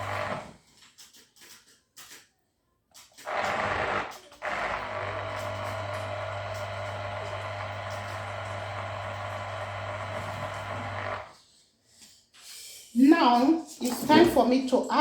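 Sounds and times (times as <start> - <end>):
appliance motor humming: 0.0 - 0.5, 3.2 - 11.3.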